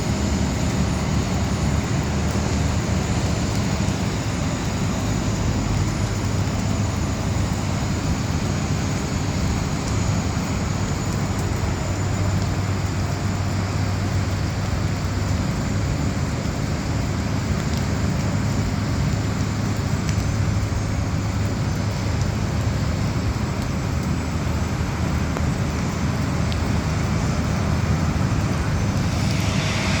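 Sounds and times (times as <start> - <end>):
high jet whine: 0.0 - 30.0
jet engine low rumble: 0.0 - 30.0.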